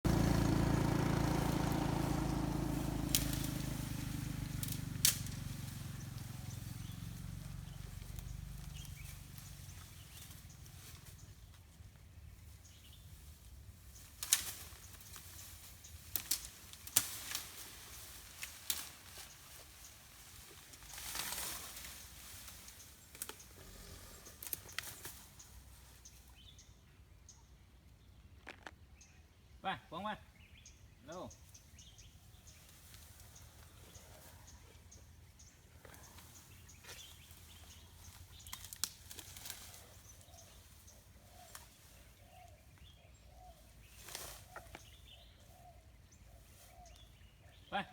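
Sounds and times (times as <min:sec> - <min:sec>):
low droning sound: 0:00.0 - 0:10.7
branches snapping: 0:00.1 - 0:11.6, 0:14.0 - 0:25.6, 0:35.8 - 0:42.6, 0:43.9 - 0:45.0
vegetation rustle: 0:00.1 - 0:26.8, 0:31.1 - 0:47.9.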